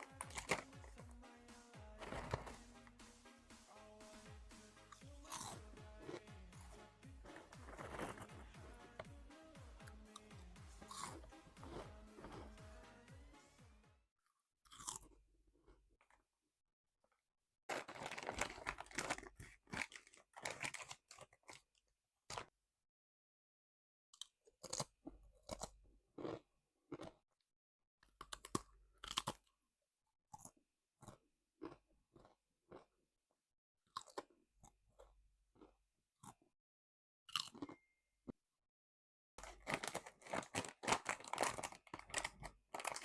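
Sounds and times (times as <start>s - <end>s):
crunching chips: 0.0s - 0.9s, 2.0s - 2.6s, 5.2s - 8.5s, 10.1s - 12.6s, 14.7s - 16.2s, 17.7s - 22.5s, 28.2s - 29.5s, 39.4s - 43.0s.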